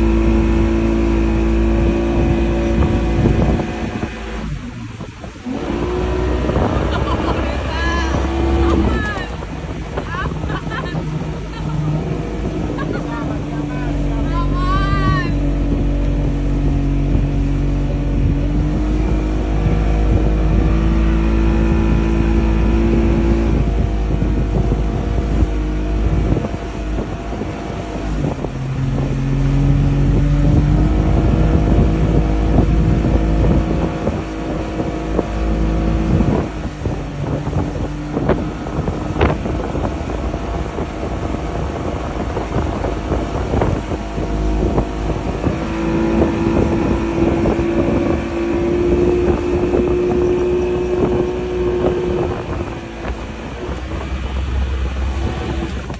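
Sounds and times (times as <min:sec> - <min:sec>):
motorboat engine running: 0:00.0 - 0:55.9
wind buffeting microphone: 0:00.0 - 0:55.9.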